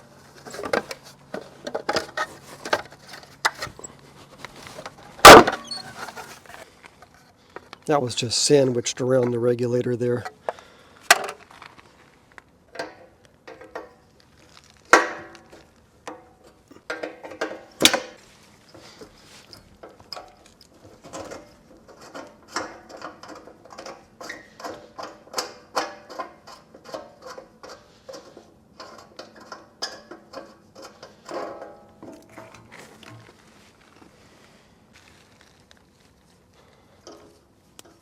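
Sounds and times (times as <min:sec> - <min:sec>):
tools clanking on metal: 0:04.6 - 0:06.6, 0:14.9 - 0:33.3.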